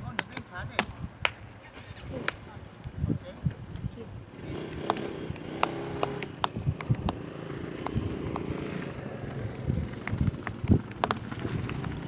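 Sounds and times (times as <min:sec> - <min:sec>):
turboprop engines droning: 0:04.1 - 0:12.0.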